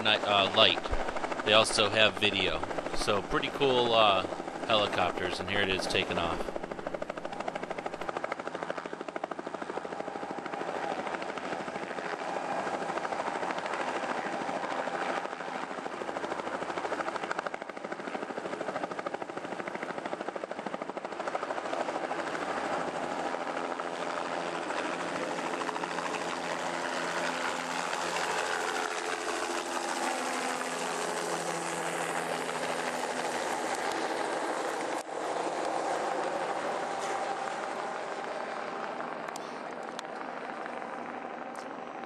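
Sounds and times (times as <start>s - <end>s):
turbine engine running: 0.0s - 8.1s
helicopter rotor blades chopping: 0.0s - 42.0s.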